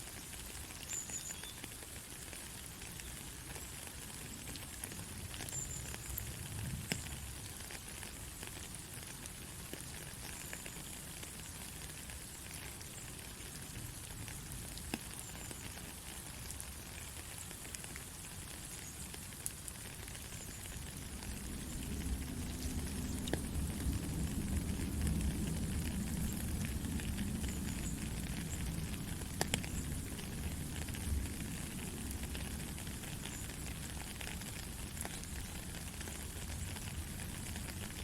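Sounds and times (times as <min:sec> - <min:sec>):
light rain hiss: 0:00.0 - 0:38.0
raindrop ticks: 0:00.1 - 0:38.0
faint low rumble: 0:20.6 - 0:38.0.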